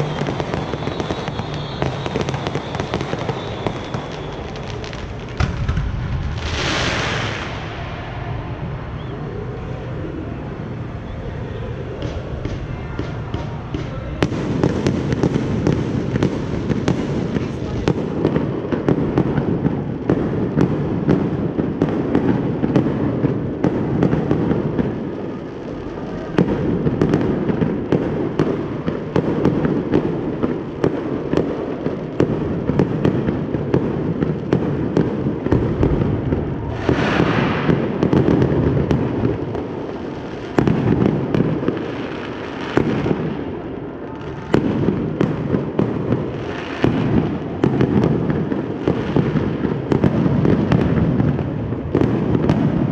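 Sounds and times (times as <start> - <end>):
sharp firework bangs: 0.0 - 9.2, 26.2 - 43.6, 44.4 - 52.9
firework crackle: 0.0 - 52.9
fireworks booming: 0.0 - 52.9.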